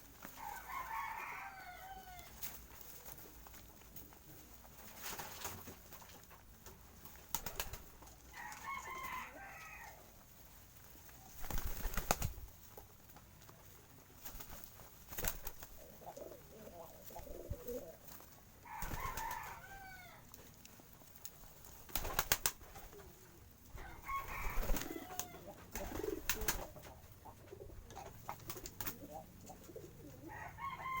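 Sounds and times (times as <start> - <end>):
pigeons cooing: 15.5 - 18.1, 22.6 - 31.0.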